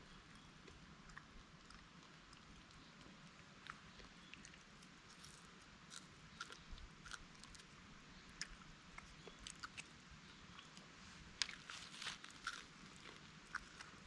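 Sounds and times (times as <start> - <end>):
low steady hiss: 0.0 - 14.0
small clicks and crunches: 11.4 - 14.0.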